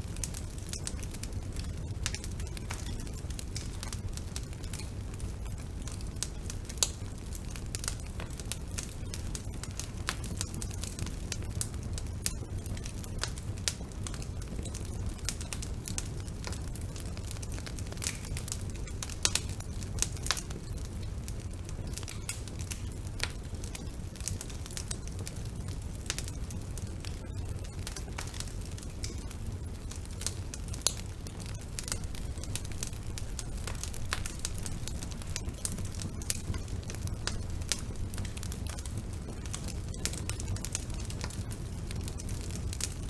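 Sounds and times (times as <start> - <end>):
low fire rumble: 0.0 - 43.0
wood fire crackling and popping: 0.0 - 43.0.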